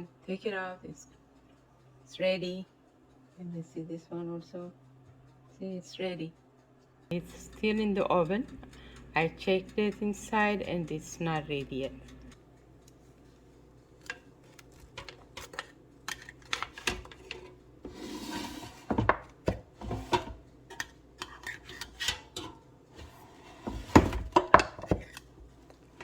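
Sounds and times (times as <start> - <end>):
baking pans clattering: 14.1 - 26.0
rubbing scrape: 17.8 - 19.0.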